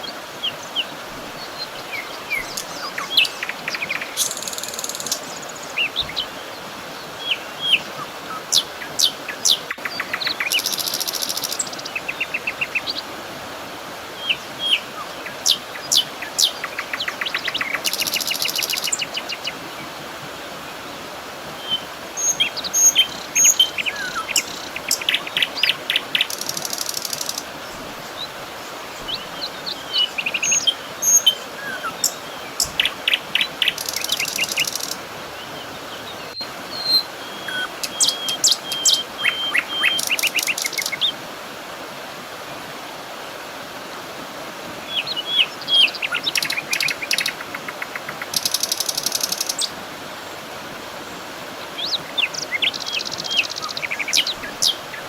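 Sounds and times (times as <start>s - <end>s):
songbirds chirping and trilling: 0.0s - 13.1s, 21.6s - 41.2s, 44.8s - 55.0s
soft background hiss: 0.0s - 55.0s.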